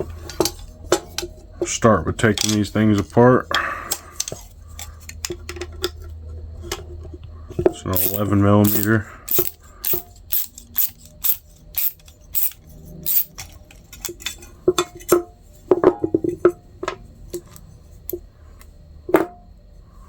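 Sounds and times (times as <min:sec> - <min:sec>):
steel parts clinking: 0:02.2 - 0:03.1, 0:07.9 - 0:15.2
ratchet clicking: 0:08.0 - 0:14.1.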